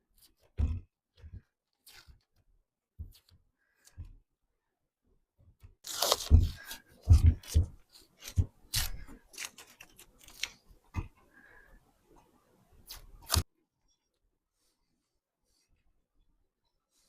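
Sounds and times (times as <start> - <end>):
tape peeling crackling rips: 5.9 - 6.4, 8.2 - 10.6.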